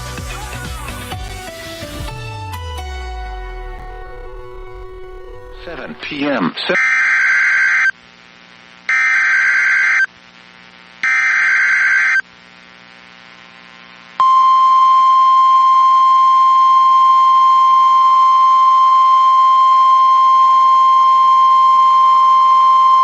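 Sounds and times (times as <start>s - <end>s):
steady single-tone alarm: 8.9s - 10.1s, 11.0s - 12.2s.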